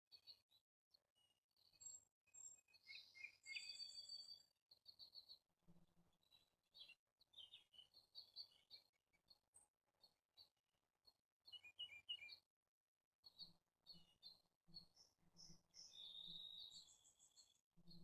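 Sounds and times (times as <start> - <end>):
songbirds chirping: 1.2 - 5.4, 6.2 - 9.7, 11.5 - 12.4, 13.2 - 18.0.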